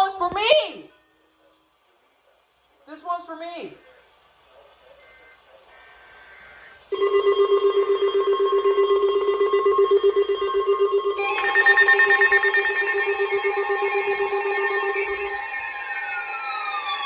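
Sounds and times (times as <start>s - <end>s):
pulsing electronic alarm buzz: 5.0s - 17.0s
higher alarm tone: 6.2s - 17.0s.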